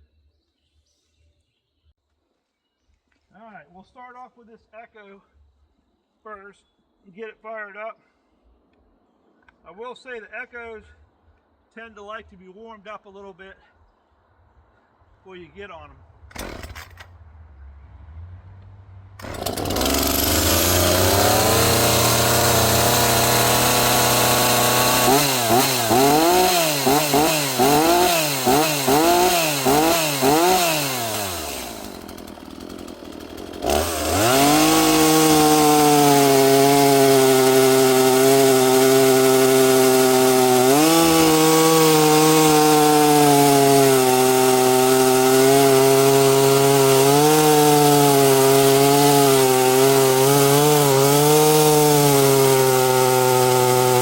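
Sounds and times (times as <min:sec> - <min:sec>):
chainsaw revving and cutting: 0:16.4 - 0:16.8, 0:19.2 - 0:54.0.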